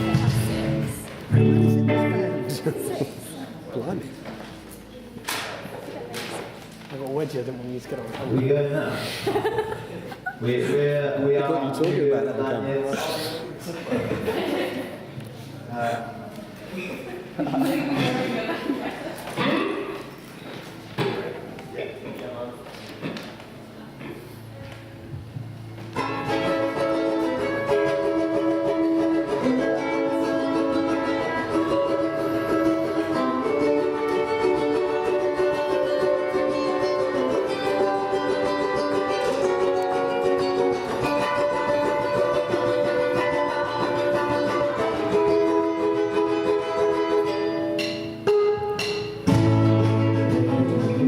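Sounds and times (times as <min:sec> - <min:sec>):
band strumming ukuleles: 0:00.0 - 0:09.2, 0:25.2 - 0:51.0.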